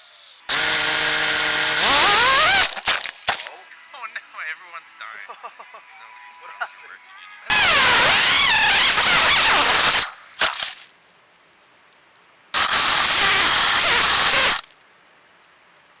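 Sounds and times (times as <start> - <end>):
quadcopter motors whining: 0.0 - 2.8, 7.5 - 10.1, 12.6 - 14.6.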